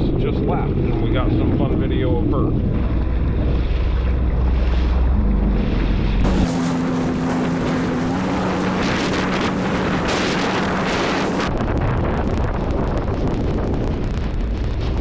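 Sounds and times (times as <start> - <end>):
wind buffeting microphone: 0.0 - 15.0
jet ski engine humming: 0.6 - 11.5.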